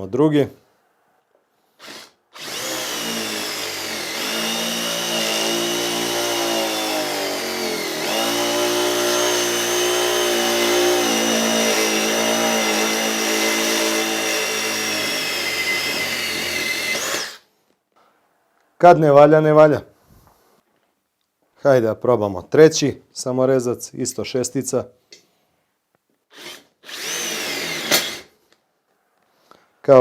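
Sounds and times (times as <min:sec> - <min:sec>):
impact driver hammering: 0:26.9 - 0:28.2.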